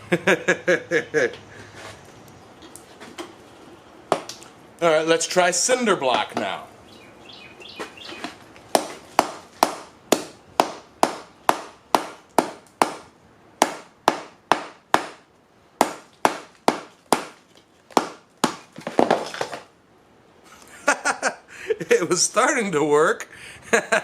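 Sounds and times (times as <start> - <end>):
hammer striking metal on block: 8.8 - 13.0, 13.6 - 15.2, 15.8 - 17.3.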